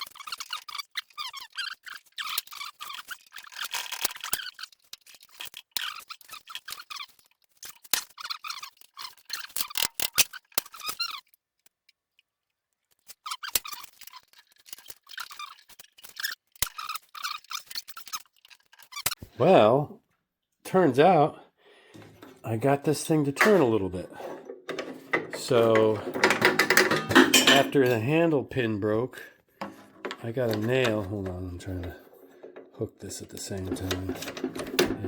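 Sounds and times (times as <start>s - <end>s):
metal clicks: 22.0s - 28.0s, 29.6s - 35.0s
rusted metal squeaking: 22.0s - 28.2s, 29.6s - 35.0s.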